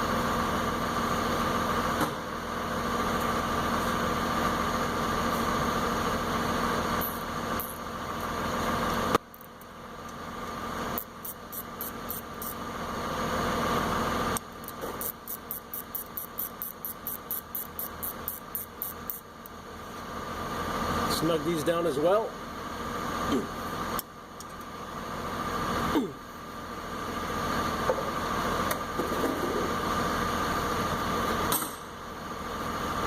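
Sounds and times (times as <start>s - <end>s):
mechanical hum: 0.0s - 33.0s
hand ratchet clicking: 14.7s - 19.2s.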